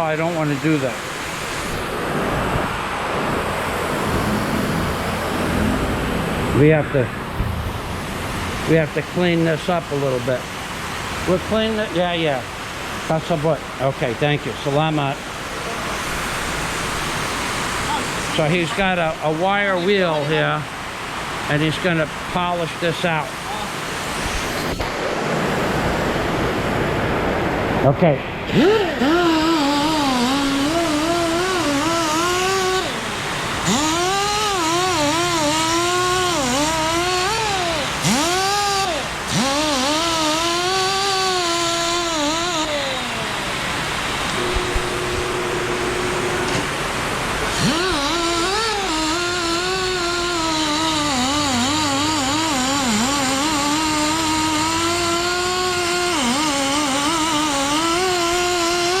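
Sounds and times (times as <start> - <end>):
wire wheel scrubbing metal: 28.5 - 59.0.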